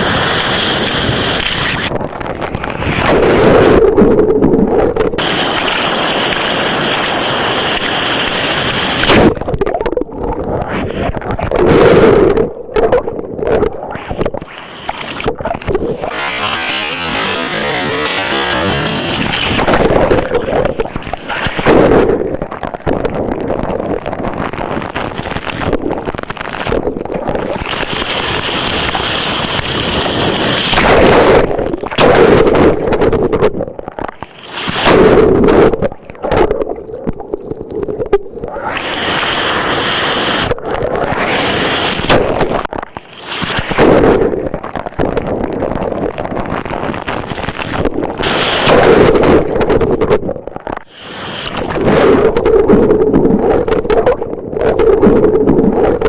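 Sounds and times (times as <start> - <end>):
rushing whitewater: 5.2 - 9.2
heavy surf crashing: 5.2 - 9.4, 38.6 - 44.2.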